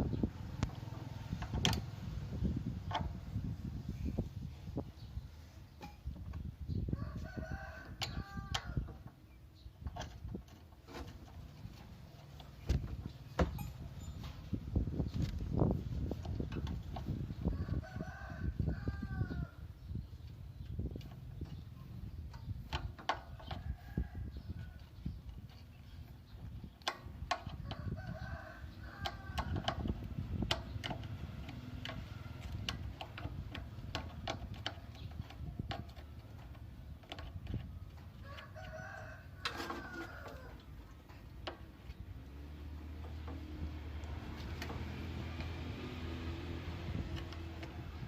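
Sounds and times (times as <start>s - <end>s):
sharp clicks and knocks: 0.6s - 2.0s, 2.8s - 3.3s, 9.8s - 14.4s, 20.6s - 23.7s, 25.3s - 27.8s, 29.0s - 38.2s, 39.4s - 48.0s
rooster crowing: 7.0s - 8.8s, 17.5s - 19.6s, 38.2s - 40.6s.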